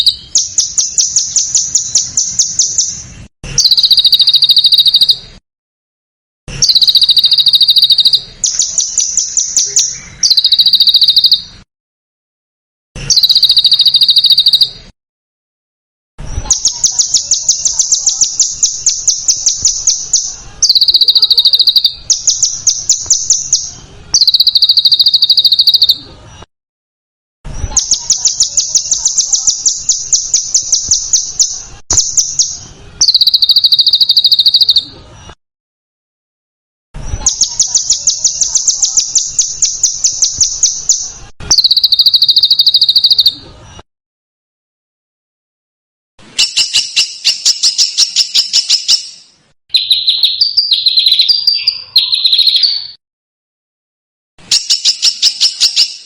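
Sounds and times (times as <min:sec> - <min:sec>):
songbird harsh trills: 0:00.0 - 0:05.3, 0:06.5 - 0:11.6, 0:13.0 - 0:14.9, 0:16.5 - 0:26.0, 0:27.7 - 0:34.9, 0:37.2 - 0:43.4, 0:46.4 - 0:53.0, 0:54.5 - 0:56.0.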